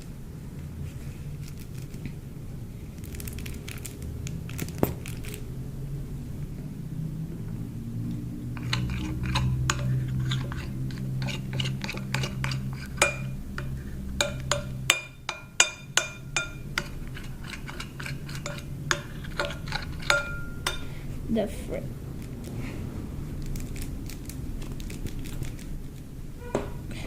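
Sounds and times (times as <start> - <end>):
steady low hum: 0.0 - 27.0
utensil clinking against bowl: 8.5 - 21.0.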